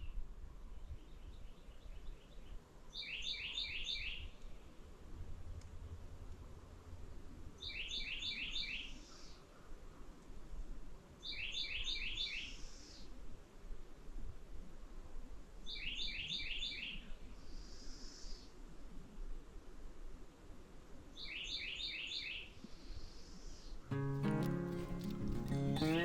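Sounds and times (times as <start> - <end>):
songbird chirping: 0.0 - 5.0, 7.5 - 10.3, 11.2 - 13.2, 15.6 - 18.5, 21.2 - 22.7, 23.7 - 26.0.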